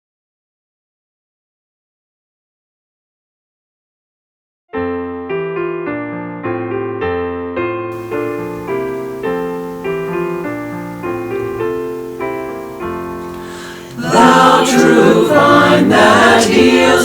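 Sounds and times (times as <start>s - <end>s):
piano chords: 4.8s - 17.0s
choir singing a hymn: 8.0s - 17.0s.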